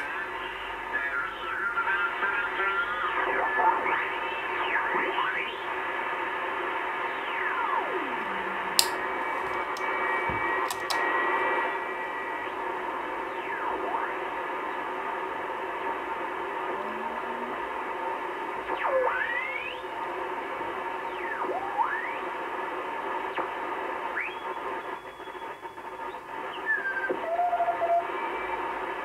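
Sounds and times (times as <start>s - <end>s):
radio static hiss: 0.0s - 29.0s
sharp clicks: 8.8s - 9.9s, 10.6s - 11.0s.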